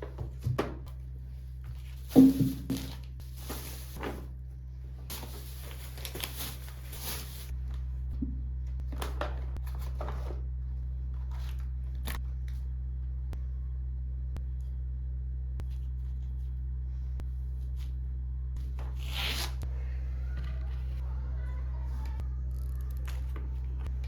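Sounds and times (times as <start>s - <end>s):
low steady hum: 0.0s - 24.0s
rustling: 1.5s - 4.3s, 5.0s - 7.6s.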